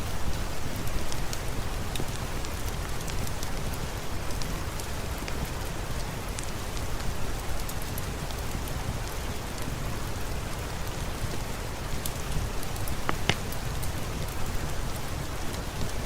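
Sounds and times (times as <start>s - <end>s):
steady rain: 0.0s - 16.0s
raindrops ticking: 12.0s - 14.6s.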